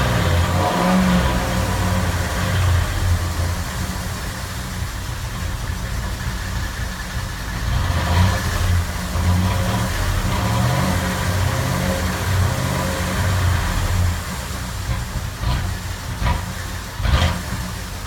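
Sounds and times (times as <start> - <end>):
car engine running: 0.0 - 18.0.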